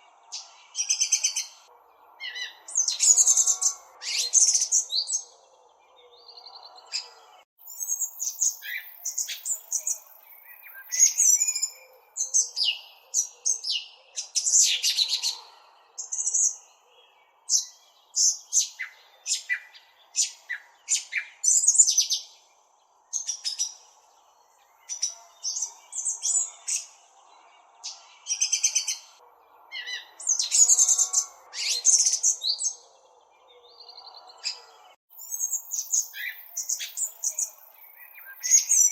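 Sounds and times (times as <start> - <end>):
small bird chirping: 0.0 - 5.4, 6.0 - 15.4, 23.1 - 27.2, 27.8 - 38.9.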